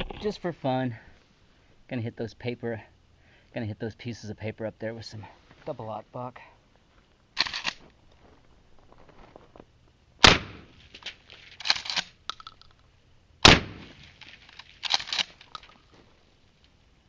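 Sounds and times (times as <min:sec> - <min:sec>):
shotgun blasts: 0:10.2 - 0:10.8, 0:13.4 - 0:14.2
shotgun pump racking clacks: 0:14.6 - 0:15.8.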